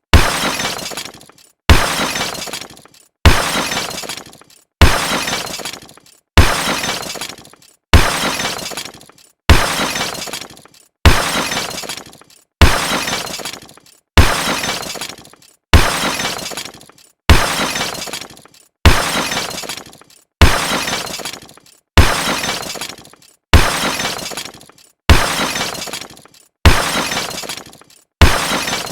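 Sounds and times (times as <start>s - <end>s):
crash impact with breaking: 23.6s - 28.9s.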